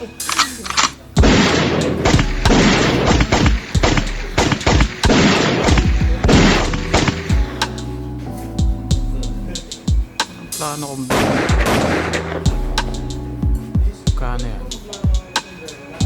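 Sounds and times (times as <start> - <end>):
background music: 0.0 - 16.0
gunshots and booms: 1.2 - 7.4, 11.1 - 12.4.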